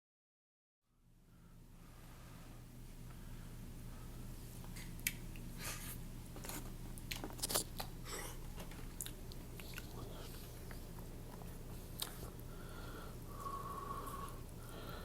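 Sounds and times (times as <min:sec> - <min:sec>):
wet chewing of noodles: 0:07.0 - 0:15.0.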